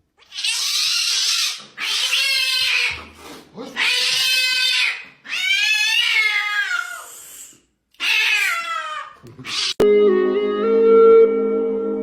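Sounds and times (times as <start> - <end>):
cat meowing: 3.6 - 7.1, 8.0 - 9.8.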